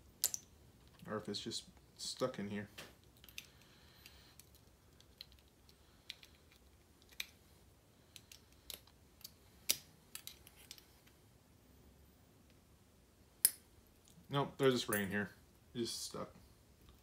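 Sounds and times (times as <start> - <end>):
small metal lock parts clicking: 3.0 - 3.7, 4.3 - 7.4, 8.1 - 10.8.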